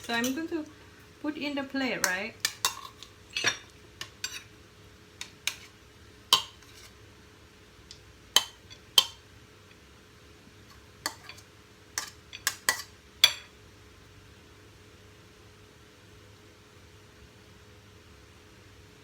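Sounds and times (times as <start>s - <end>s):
utensils clinking on dishes: 0.0s - 0.6s, 2.0s - 4.5s.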